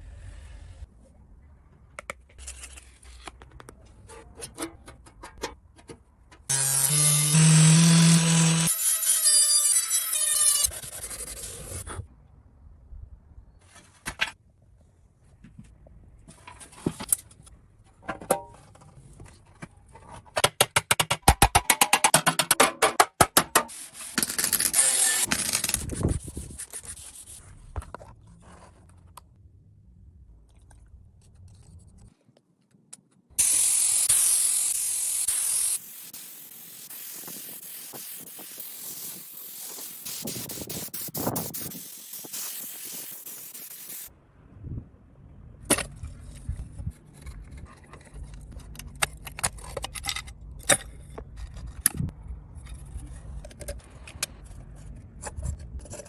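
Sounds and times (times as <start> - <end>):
spraying hiss: 33.4 - 44.1.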